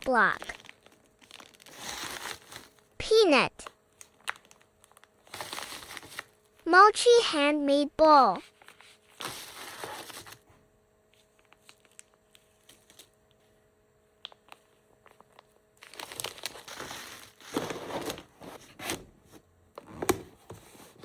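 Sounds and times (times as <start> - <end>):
packaging crinkling and rustling: 0.0 - 2.9, 3.6 - 6.6, 8.5 - 10.5, 11.1 - 13.5, 14.2 - 19.0.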